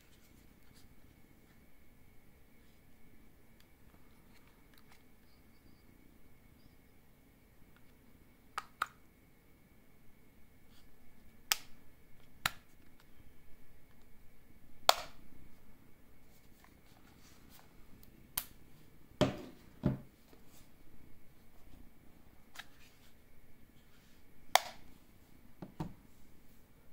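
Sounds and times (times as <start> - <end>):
faint steady hum: 0.0 - 26.9.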